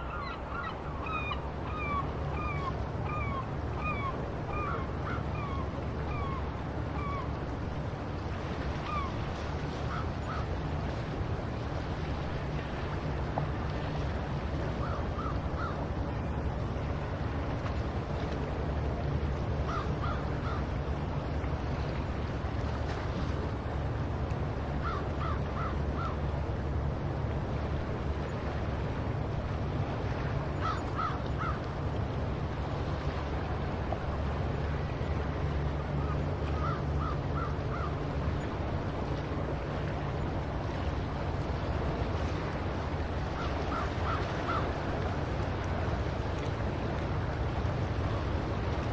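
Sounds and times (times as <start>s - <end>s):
seagulls calling: 0.0s - 7.3s, 8.8s - 9.2s, 14.8s - 15.8s, 19.6s - 20.7s, 24.8s - 26.2s, 30.6s - 31.6s, 36.0s - 38.0s, 43.3s - 44.8s.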